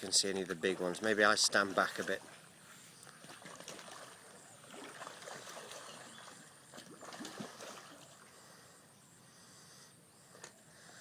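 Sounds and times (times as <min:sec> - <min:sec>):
fish splashing at water surface: 0:03.2 - 0:08.2.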